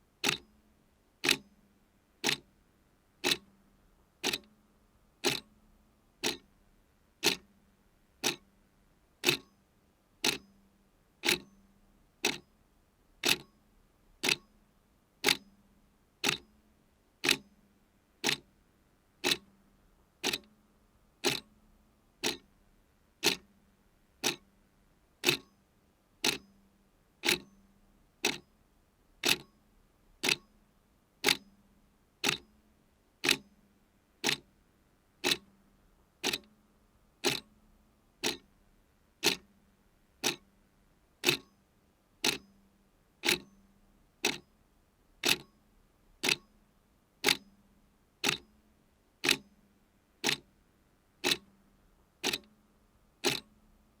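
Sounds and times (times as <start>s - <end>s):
clock ticking: 0.2s - 0.4s, 1.2s - 1.4s, 2.2s - 2.4s, 3.2s - 3.4s, 4.2s - 4.5s, 5.2s - 5.5s, 6.2s - 6.4s, 7.2s - 7.4s, 8.2s - 8.4s, 9.2s - 9.5s, 10.2s - 10.4s, 13.2s - 13.5s, 14.2s - 14.4s, 16.2s - 16.4s, 17.2s - 17.4s, 18.2s - 18.4s, 19.2s - 19.4s, 20.2s - 20.5s, 21.2s - 21.5s, 22.2s - 22.4s, 23.2s - 23.4s, 24.2s - 24.4s, 25.2s - 25.5s, 26.2s - 26.4s, 27.2s - 27.5s, 29.2s - 29.5s, 30.2s - 30.4s, 31.2s - 31.4s, 32.2s - 32.4s, 33.2s - 33.4s, 34.2s - 34.4s, 35.2s - 35.5s, 36.2s - 36.5s, 37.2s - 37.5s, 38.2s - 38.5s, 39.2s - 39.5s, 40.2s - 40.4s, 41.2s - 41.5s, 42.2s - 42.4s, 43.2s - 43.5s, 44.2s - 44.4s, 45.2s - 45.5s, 46.2s - 46.5s, 47.2s - 47.4s, 48.2s - 48.4s, 49.2s - 49.4s, 50.2s - 50.4s, 51.2s - 51.5s, 52.2s - 52.5s, 53.2s - 53.5s.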